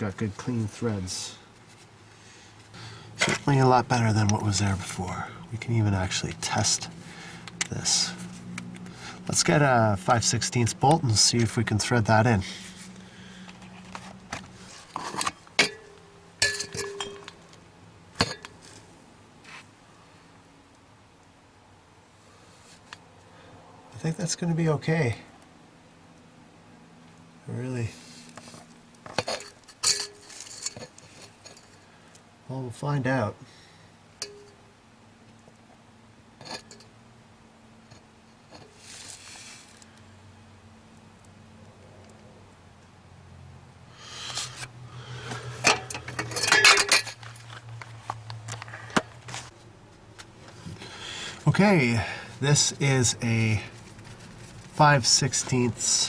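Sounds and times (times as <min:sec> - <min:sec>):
steady low hum: 0:00.0 - 0:20.5
metal hardware clinking: 0:13.9 - 0:17.6, 0:18.2 - 0:18.8, 0:29.1 - 0:31.9, 0:34.2 - 0:34.6, 0:36.4 - 0:36.9, 0:44.4 - 0:47.8
light metallic clink: 0:15.6 - 0:17.4, 0:34.2 - 0:34.6
brief scraping rustle: 0:38.8 - 0:39.8.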